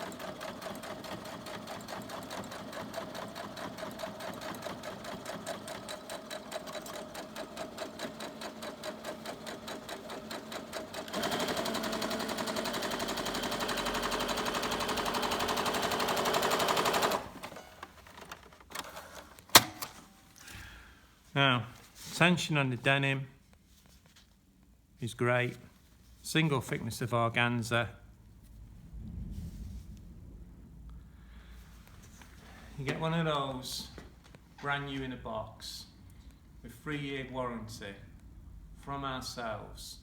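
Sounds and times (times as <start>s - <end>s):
sewing machine stitching: 0.0s - 19.9s.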